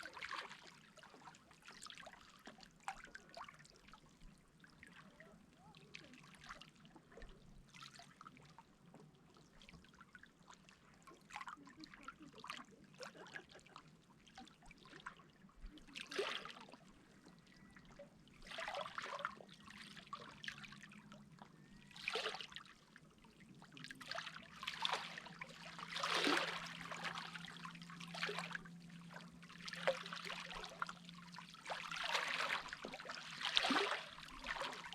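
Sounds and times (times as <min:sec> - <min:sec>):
sea water lapping and splashing: 0:00.0 - 0:34.9.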